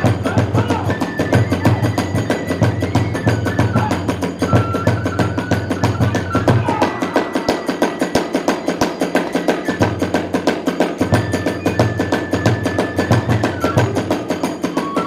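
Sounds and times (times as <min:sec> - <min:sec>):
bamboo flute long high notes: 0:00.0 - 0:15.0
rapid drum strokes: 0:00.0 - 0:15.0
small hand cymbals clashing: 0:07.0 - 0:11.7, 0:12.7 - 0:15.0.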